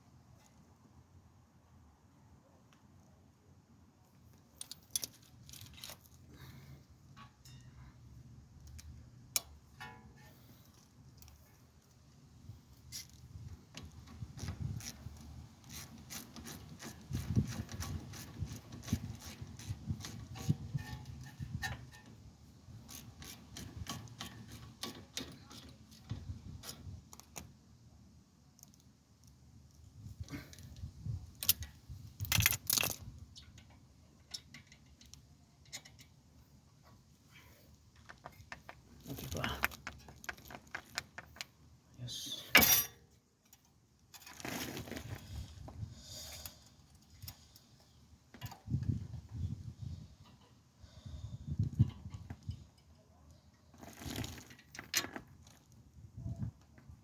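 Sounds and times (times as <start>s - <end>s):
tools and metal parts clinking: 4.5s - 6.2s, 31.4s - 36.2s, 42.5s - 45.1s.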